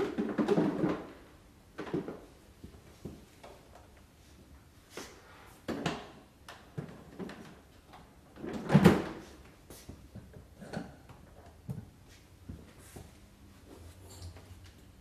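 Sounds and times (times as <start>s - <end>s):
objects knocking and clunking: 0.0s - 4.0s, 5.6s - 13.2s.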